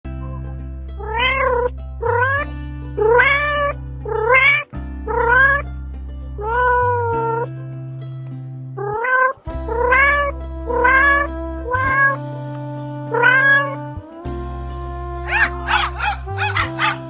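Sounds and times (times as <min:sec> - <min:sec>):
background music with low notes: 0:00.0 - 0:17.0
cat meowing: 0:01.0 - 0:05.6, 0:06.4 - 0:07.4, 0:08.8 - 0:12.2, 0:13.1 - 0:13.8, 0:15.3 - 0:17.0.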